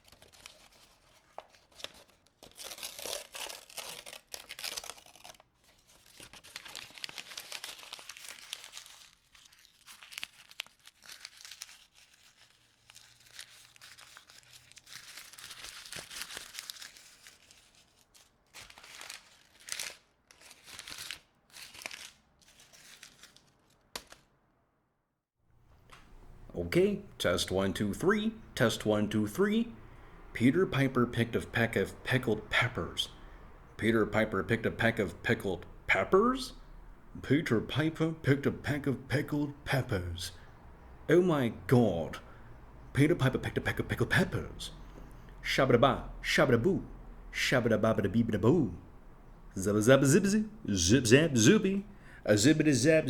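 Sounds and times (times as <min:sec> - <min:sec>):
crumpling and crinkling: 0:00.0 - 0:24.3.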